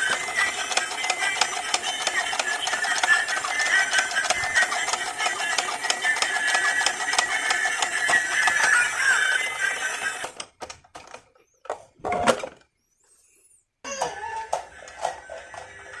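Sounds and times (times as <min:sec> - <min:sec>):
toy motor whine: 0:00.0 - 0:10.4, 0:13.0 - 0:16.0
plastic gears clattering: 0:00.0 - 0:12.7.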